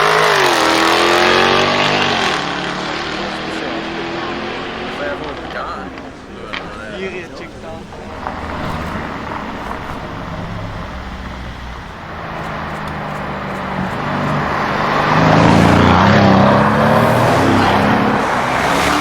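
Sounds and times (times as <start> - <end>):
car engine exhaust revving: 0.0 - 19.0.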